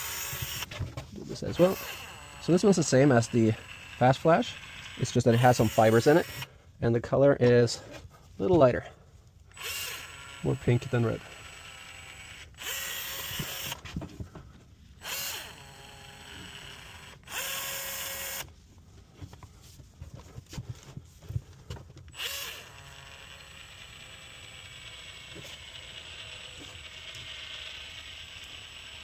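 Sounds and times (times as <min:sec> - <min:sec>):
caulking gun motor running: 0:00.0 - 0:00.7, 0:01.5 - 0:06.6, 0:09.5 - 0:13.8, 0:15.0 - 0:18.5, 0:22.1 - 0:29.0.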